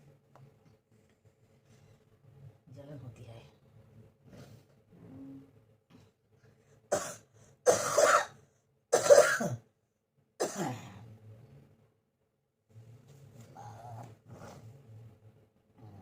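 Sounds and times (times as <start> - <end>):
person coughing: 6.9 - 8.4, 9.0 - 9.7, 10.4 - 10.9.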